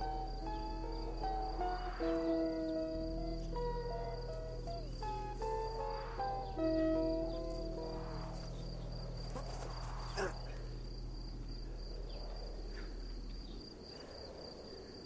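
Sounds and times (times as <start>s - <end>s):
low steady hum: 0.0s - 14.1s
crickets trilling: 0.0s - 15.0s.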